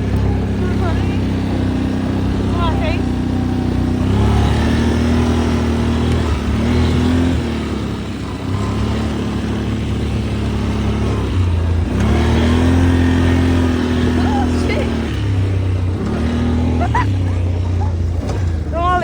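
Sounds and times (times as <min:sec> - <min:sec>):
atv engine running: 0:00.0 - 0:19.0.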